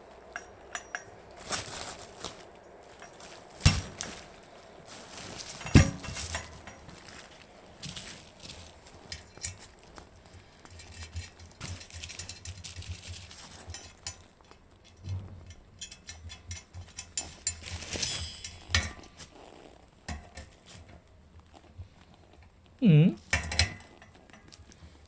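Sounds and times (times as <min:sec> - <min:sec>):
metal parts knocking and clinking: 0:00.2 - 0:01.7, 0:02.8 - 0:10.0, 0:10.6 - 0:19.2
metal scrape: 0:15.0 - 0:19.5.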